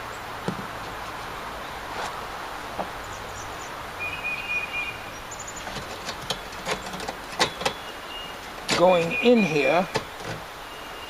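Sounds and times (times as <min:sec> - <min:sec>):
outdoor background noise: 0:00.0 - 0:11.0
bird chirping: 0:03.0 - 0:11.0.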